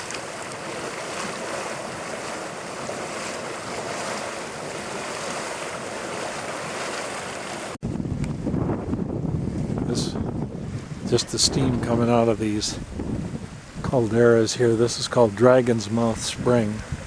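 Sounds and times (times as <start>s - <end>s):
hot spring bubbling and churning: 0.0s - 7.8s.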